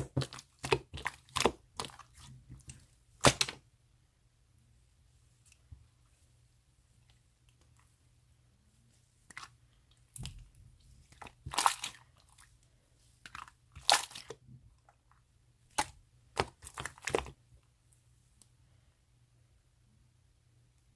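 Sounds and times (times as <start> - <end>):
slime squishing and crackling: 0.0 - 3.6, 9.3 - 12.6, 13.2 - 14.6, 15.7 - 17.4.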